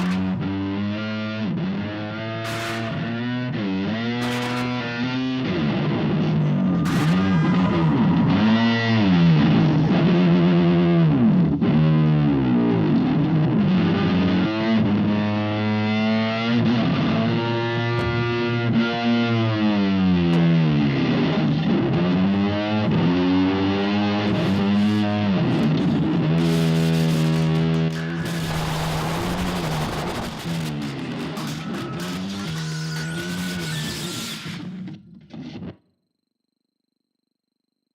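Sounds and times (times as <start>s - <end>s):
car engine revving: 22.4s - 32.6s.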